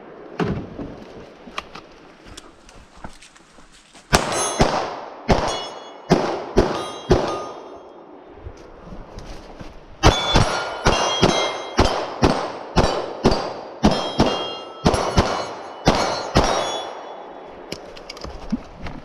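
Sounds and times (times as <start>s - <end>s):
metallic ringing of steel targets: 4.2s - 8.2s, 10.0s - 17.5s
rapid gunshots: 10.0s - 16.8s.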